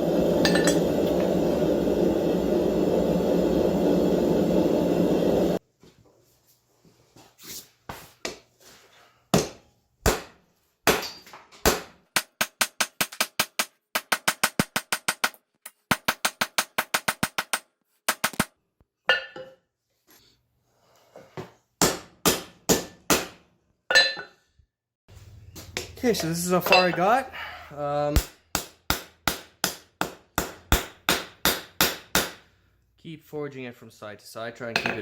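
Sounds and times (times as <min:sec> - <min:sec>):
hammer striking steel on anvil: 0:00.4 - 0:01.2, 0:09.4 - 0:18.2, 0:21.8 - 0:24.3, 0:25.8 - 0:27.0, 0:28.2 - 0:32.4.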